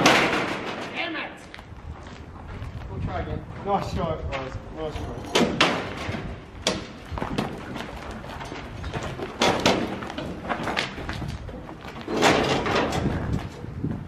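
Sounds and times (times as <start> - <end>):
bangs and clattering knocks: 0.0 - 1.0, 5.3 - 13.5.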